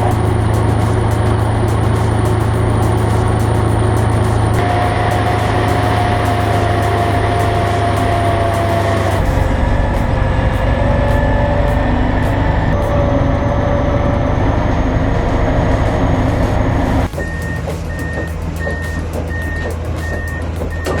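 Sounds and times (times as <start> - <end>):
heavy diesel engine running: 0.0 - 21.0
reversing alarm beeps: 17.1 - 21.0.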